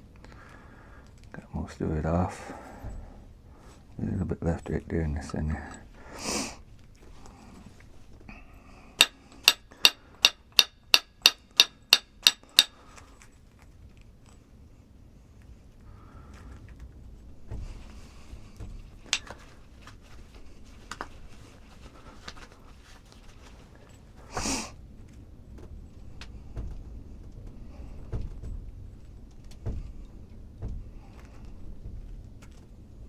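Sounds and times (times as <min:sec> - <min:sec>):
low handling rumble: 0:00.0 - 0:09.5, 0:13.4 - 0:33.0
tool clicking and scraping on stone: 0:09.0 - 0:12.9, 0:17.4 - 0:21.3.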